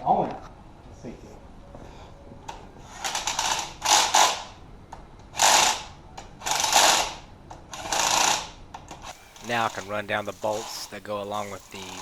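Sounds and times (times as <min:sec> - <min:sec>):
ratchet wrench clicking: 0:09.4 - 0:12.0.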